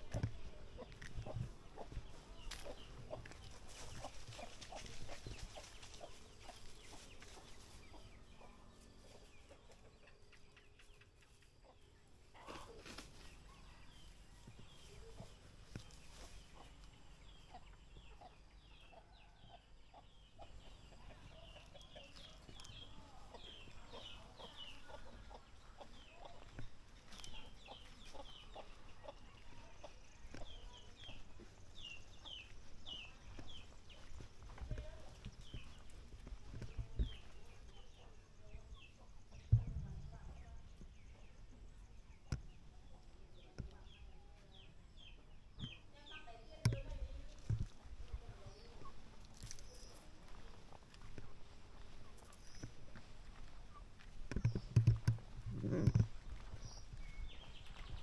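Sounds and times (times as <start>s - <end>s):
chickens clucking: 0.0s - 58.0s.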